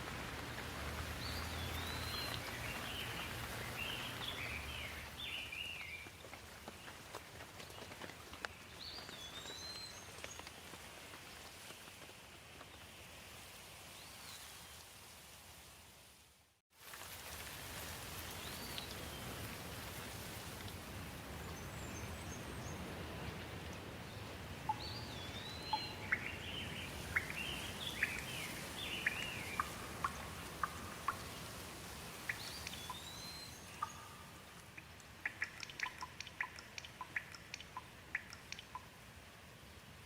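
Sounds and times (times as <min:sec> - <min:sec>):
water drips ticking: 0:00.0 - 0:09.6, 0:23.3 - 0:23.9, 0:24.6 - 0:39.1
steady rain: 0:00.0 - 0:40.0.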